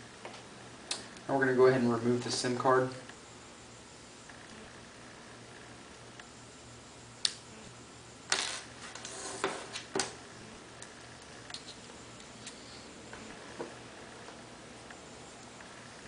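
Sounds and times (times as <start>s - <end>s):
sim tray scraping: 8.5s - 9.9s.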